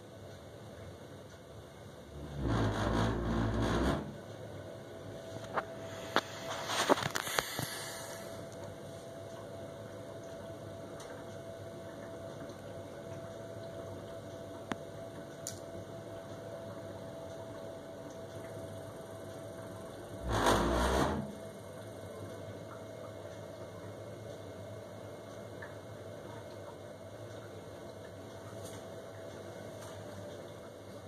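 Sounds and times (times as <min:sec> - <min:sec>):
boiler humming: 0:00.0 - 0:31.0
loud burner rumble: 0:02.1 - 0:04.4, 0:05.1 - 0:08.6, 0:20.2 - 0:21.6.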